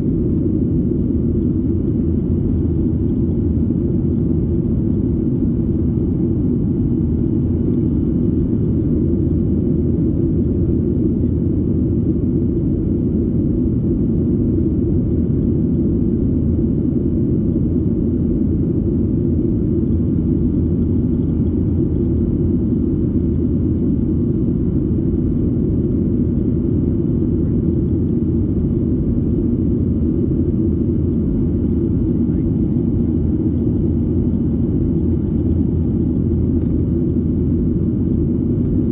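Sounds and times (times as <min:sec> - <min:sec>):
airliner cabin drone: 0:00.0 - 0:38.9.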